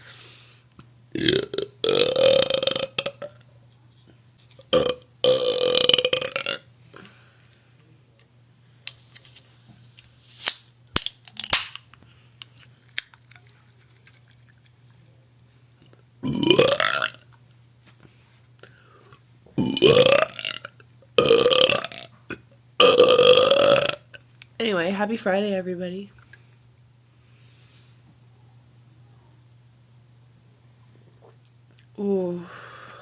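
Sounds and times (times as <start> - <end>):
woman burping loudly: 1.1 - 3.3, 4.7 - 6.7, 16.2 - 17.2, 19.6 - 22.1, 22.8 - 24.1
soft hissing: 8.8 - 10.7.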